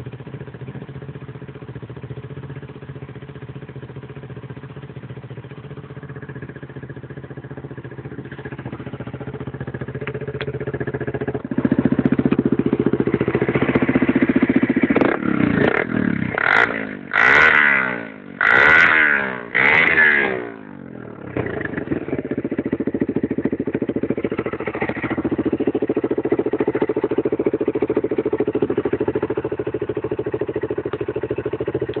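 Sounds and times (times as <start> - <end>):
quad bike engine running: 0.0 - 32.0
quick engine revs: 14.9 - 22.0.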